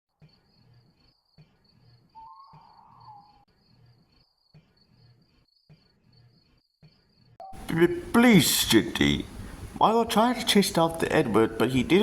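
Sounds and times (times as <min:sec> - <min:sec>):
crickets chirping: 0:00.1 - 0:07.5.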